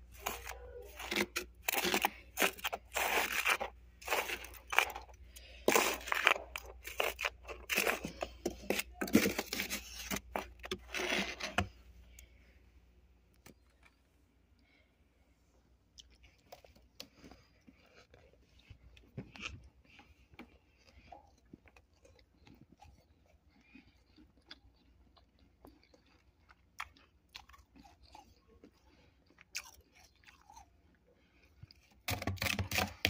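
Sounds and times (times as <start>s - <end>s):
frost crunching and scraping: 0.0s - 12.3s, 31.7s - 33.0s.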